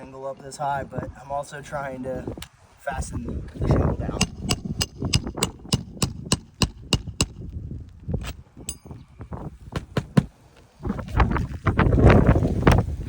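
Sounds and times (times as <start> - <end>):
hammer striking a nail: 4.2 - 7.5, 9.8 - 10.3.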